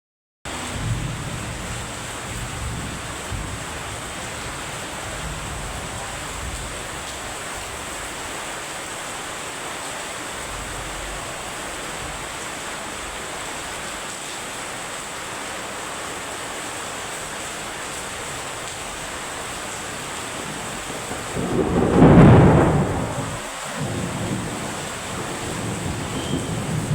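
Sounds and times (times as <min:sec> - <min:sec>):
heavy rain falling: 0:00.5 - 0:26.9
thunder rumbling: 0:00.7 - 0:08.1, 0:19.0 - 0:26.9.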